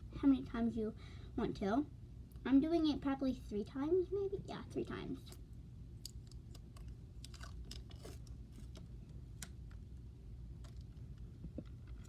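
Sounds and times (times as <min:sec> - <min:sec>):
low steady hum: 0:00.0 - 0:12.0
plastic bag and tape crinkling: 0:06.1 - 0:09.6.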